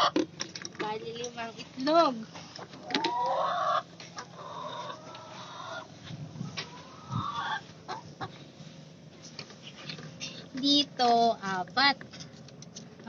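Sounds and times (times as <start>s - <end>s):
hens clucking and calling: 2.4s - 8.6s.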